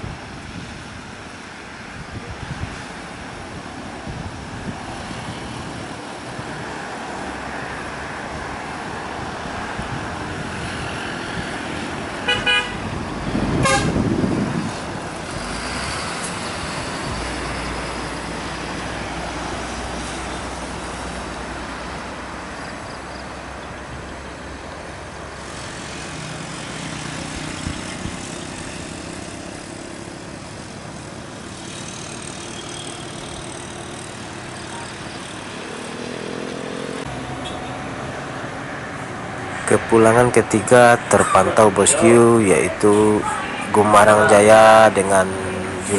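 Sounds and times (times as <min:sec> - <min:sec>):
engine and road noise: 0:00.0 - 0:45.9
bus horn blast: 0:12.2 - 0:12.8, 0:13.6 - 0:14.1
short horn beeps: 0:13.6 - 0:14.0.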